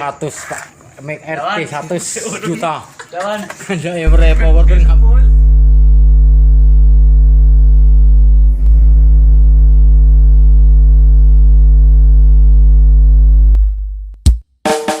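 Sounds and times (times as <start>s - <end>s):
loud deep bass tone: 4.1s - 14.3s.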